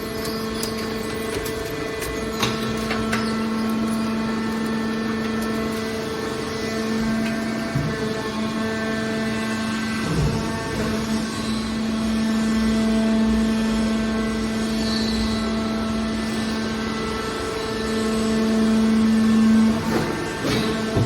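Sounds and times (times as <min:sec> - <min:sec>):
metallic clank and squeal: 0:00.0 - 0:08.4, 0:14.6 - 0:15.7
hydraulic power unit hum: 0:00.0 - 0:21.0.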